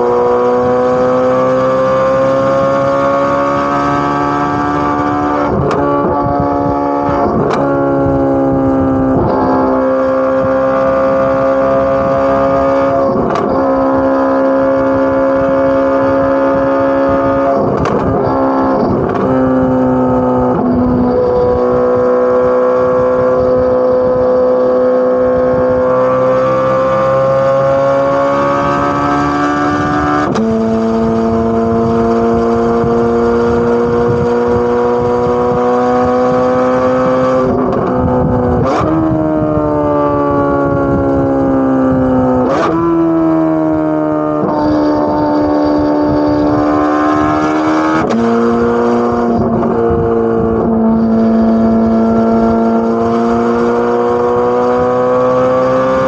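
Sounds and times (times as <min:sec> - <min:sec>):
car exhaust running: 0:00.0 - 0:56.0
exhaust cracks: 0:12.8 - 0:15.0, 0:16.6 - 0:19.4.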